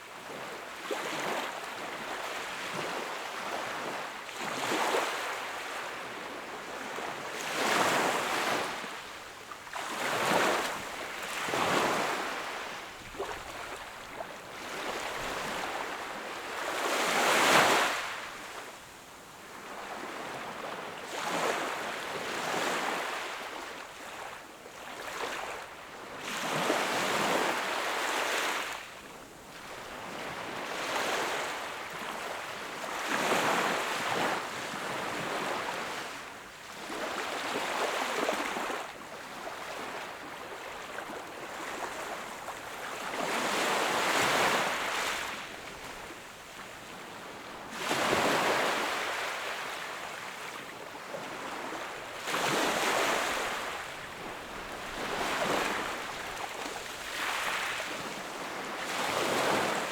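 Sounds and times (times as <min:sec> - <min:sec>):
small waves washing up shore: 0:19.4 - 0:59.9.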